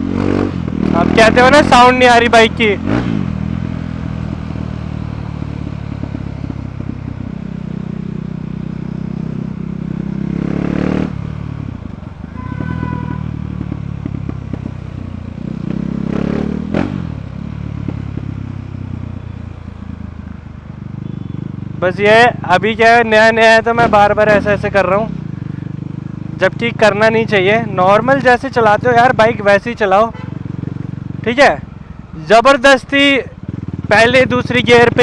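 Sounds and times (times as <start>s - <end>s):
motorcycle engine accelerating: 0.0s - 35.0s
exhaust crack: 10.6s - 18.5s.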